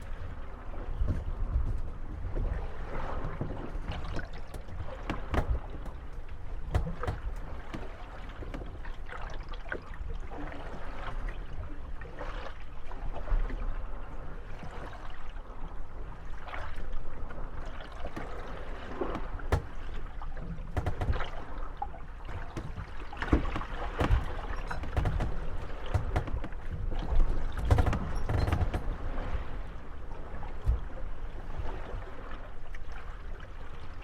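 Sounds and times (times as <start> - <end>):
hollow knocks of boats bumping: 0.0 - 9.9, 17.3 - 31.8
creaking hulls: 0.0 - 11.2, 17.4 - 31.7
water lapping against hulls: 0.0 - 34.0.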